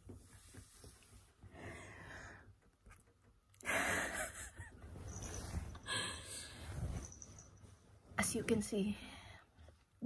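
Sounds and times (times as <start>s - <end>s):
person breathing: 1.4s - 2.6s, 5.7s - 7.2s.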